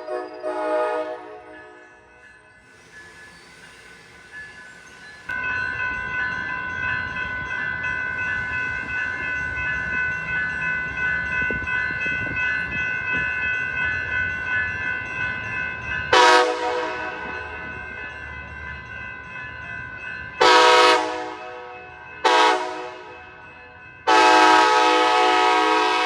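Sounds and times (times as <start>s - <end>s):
train air horn blast: 0.0s - 1.6s, 16.1s - 17.3s, 20.4s - 21.6s, 22.2s - 23.1s, 24.1s - 26.0s
train rumbling: 0.0s - 26.0s.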